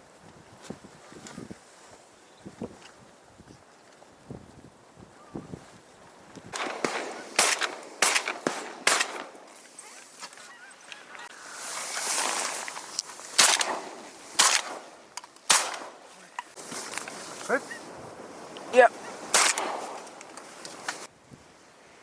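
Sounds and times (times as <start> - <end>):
geese honking: 9.9 - 11.6.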